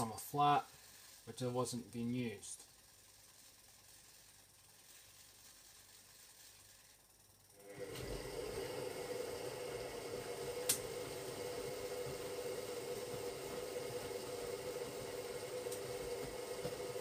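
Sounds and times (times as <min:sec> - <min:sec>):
washing machine humming: 0:07.5 - 0:17.0.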